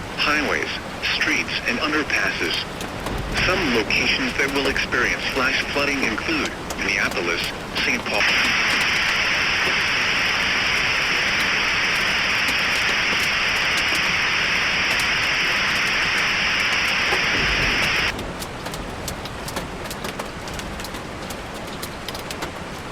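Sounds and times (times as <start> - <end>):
static hiss: 0.0 - 18.2
crackles of raindrops: 0.0 - 22.9
rain falling: 0.0 - 22.9.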